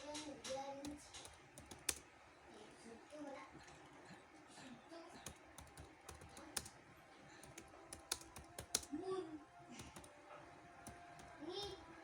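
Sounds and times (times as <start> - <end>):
computer keyboard typing: 0.0 - 2.1, 5.2 - 9.0, 9.7 - 10.2, 10.8 - 12.0.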